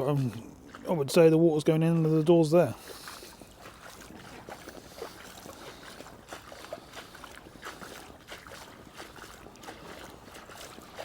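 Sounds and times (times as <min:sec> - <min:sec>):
boots crunching over ice: 0:02.8 - 0:11.0.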